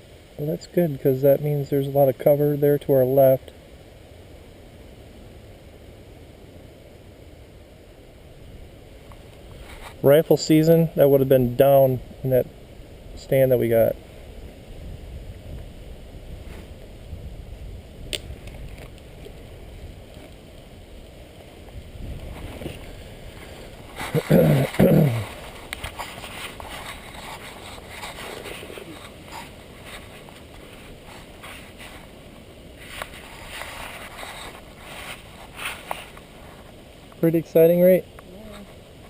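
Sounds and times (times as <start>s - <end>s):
wind rumbling on microphone: 10.8s - 37.2s.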